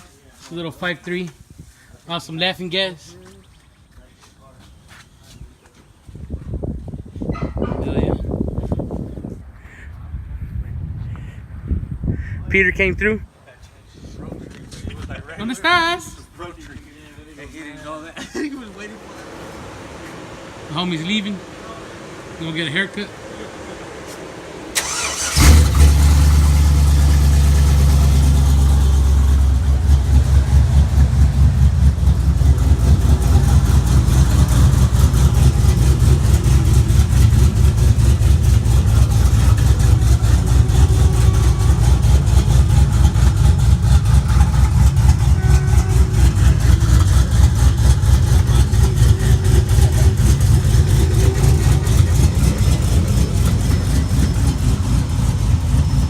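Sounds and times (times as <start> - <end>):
car engine idling: 16.0 - 56.0.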